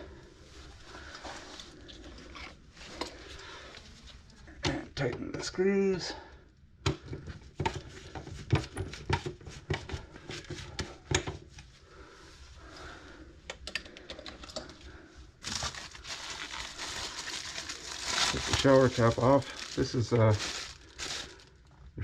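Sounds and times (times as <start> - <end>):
plastic crinkling: 15.4 - 21.7.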